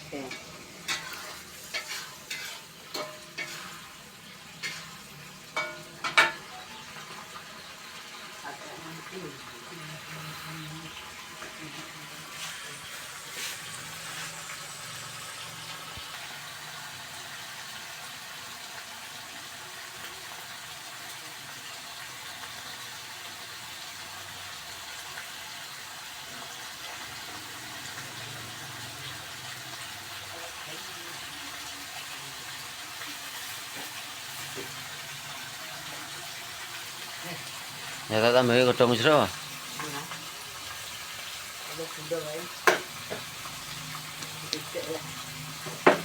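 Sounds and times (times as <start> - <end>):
food sizzling in hot oil: 0.0 - 46.0.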